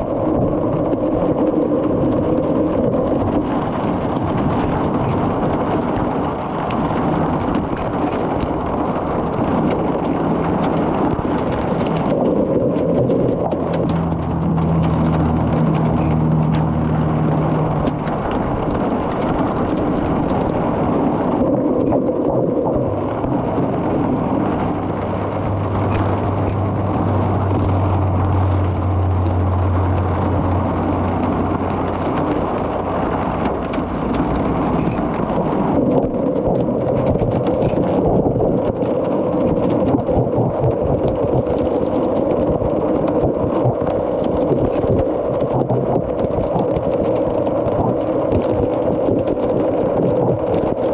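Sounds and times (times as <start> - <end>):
hail and rain on hard surfaces: 0.0 - 50.9
low steady hum: 0.0 - 50.9.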